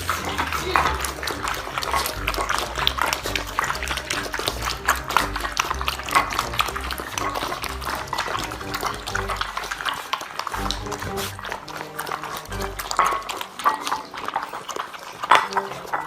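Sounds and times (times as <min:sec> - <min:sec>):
background music with bass line: 0:00.0 - 0:09.8, 0:10.6 - 0:11.7.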